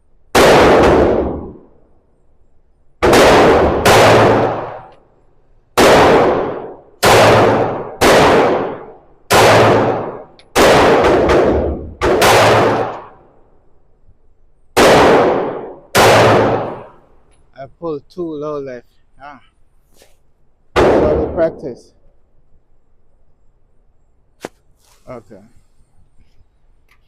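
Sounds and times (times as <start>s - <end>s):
pistol shots with echo: 0.3s - 1.7s, 3.0s - 4.9s, 5.8s - 13.2s, 14.8s - 17.0s, 20.7s - 21.8s.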